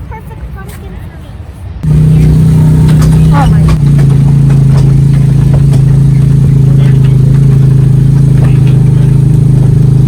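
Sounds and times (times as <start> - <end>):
engine running with low hum: 1.8 - 10.0.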